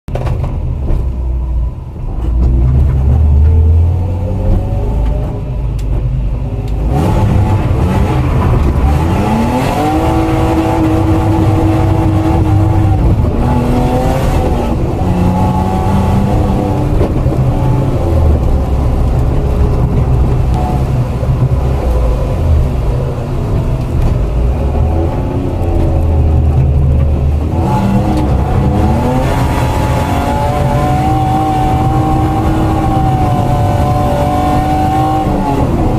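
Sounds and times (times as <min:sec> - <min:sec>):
car engine revving hard: 0:06.8 - 0:21.5, 0:27.4 - 0:35.9.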